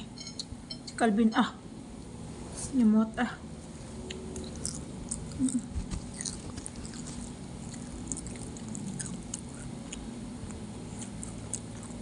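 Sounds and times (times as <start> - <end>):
chewing fried food: 3.8 - 12.0
moist clicks and crunches: 4.1 - 12.0.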